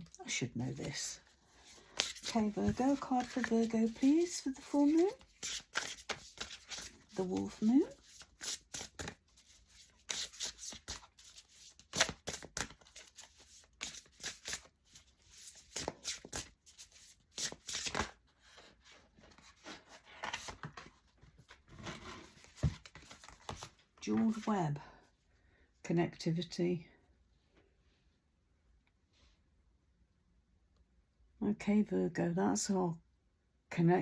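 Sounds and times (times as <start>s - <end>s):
cards being shuffled: 0.7s - 18.2s, 19.2s - 21.0s, 22.2s - 24.5s.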